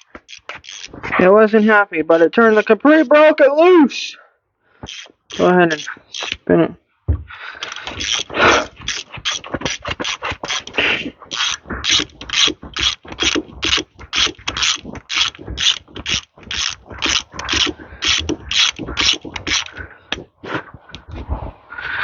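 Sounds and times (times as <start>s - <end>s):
hand ratchet clicking: 0.0s - 1.0s, 2.2s - 3.0s, 4.8s - 6.4s, 7.6s - 20.3s.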